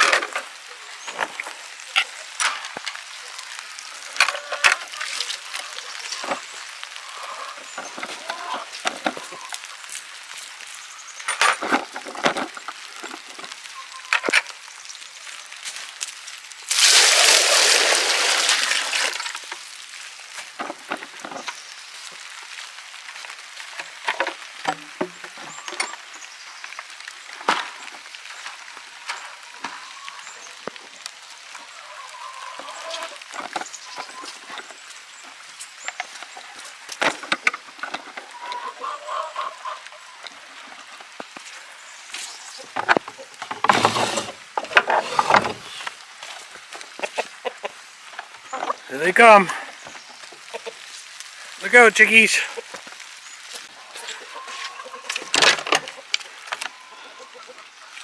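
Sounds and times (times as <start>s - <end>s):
chickens clucking: 0.0s - 10.2s, 27.6s - 58.0s
wooden knocks and bucket clinks: 7.7s - 9.6s, 11.3s - 14.5s, 20.4s - 21.6s, 23.6s - 26.0s, 27.4s - 29.8s, 32.7s - 38.7s, 42.6s - 46.4s, 54.5s - 56.8s
water pouring from bucket: 16.6s - 20.1s.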